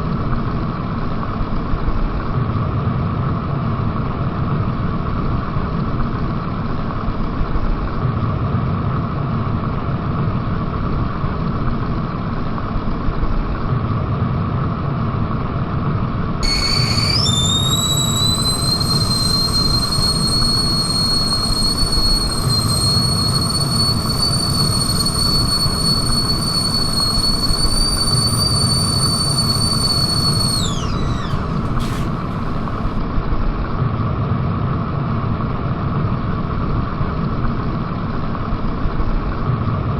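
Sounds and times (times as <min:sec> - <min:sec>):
kettle whistling: 0:16.4 - 0:33.0.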